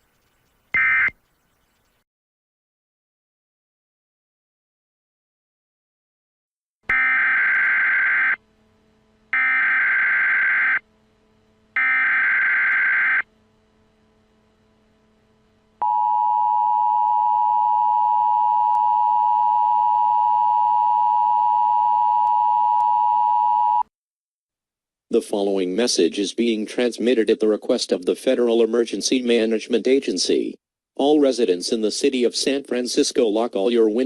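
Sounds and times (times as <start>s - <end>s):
two-tone alert signal: 0.8s - 1.2s.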